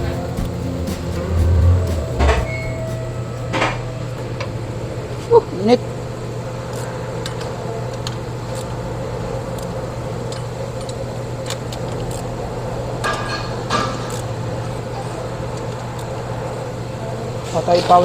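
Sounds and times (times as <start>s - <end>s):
machine hum: 0.0s - 5.3s.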